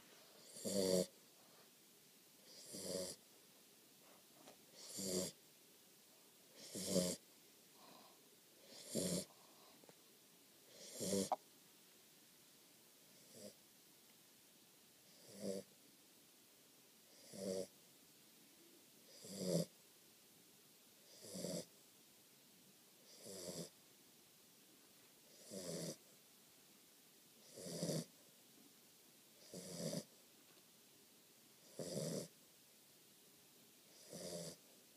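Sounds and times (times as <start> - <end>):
puppy snoring: 0.4 - 1.2, 2.4 - 3.2, 4.7 - 5.4, 6.5 - 7.2, 7.8 - 9.7, 10.6 - 11.4, 13.1 - 13.6, 15.0 - 15.7, 17.1 - 17.8, 19.0 - 19.7, 21.0 - 21.7, 23.0 - 23.8, 25.2 - 26.0, 27.4 - 28.2, 29.4 - 30.1, 31.6 - 32.4, 33.9 - 34.7.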